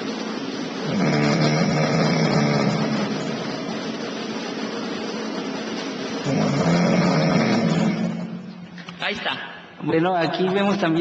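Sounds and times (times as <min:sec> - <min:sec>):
loud rasping snores: 0:00.8 - 0:03.5, 0:06.2 - 0:08.3.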